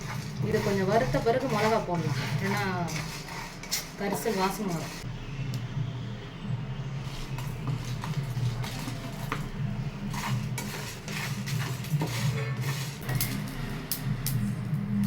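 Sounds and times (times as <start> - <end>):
utensil scraping and clinking in pan: 0.0 - 5.1, 7.1 - 13.6.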